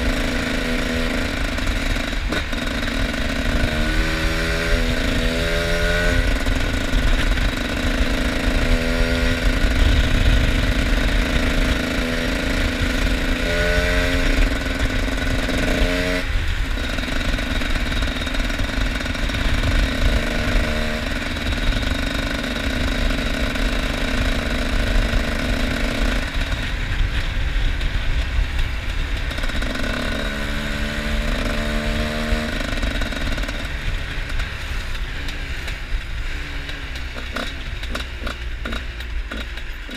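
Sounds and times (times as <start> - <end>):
two-stroke motorcycle revving: 0.0 - 39.9.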